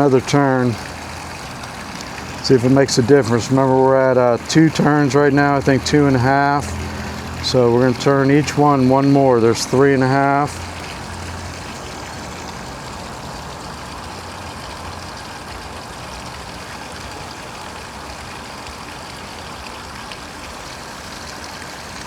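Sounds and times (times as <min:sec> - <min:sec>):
running water rushing: 0:00.0 - 0:22.0.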